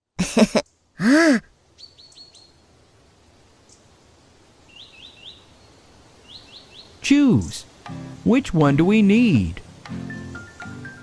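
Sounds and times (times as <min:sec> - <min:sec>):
faint ambient background: 0:00.2 - 0:11.0
cartoon character humming: 0:01.0 - 0:01.5.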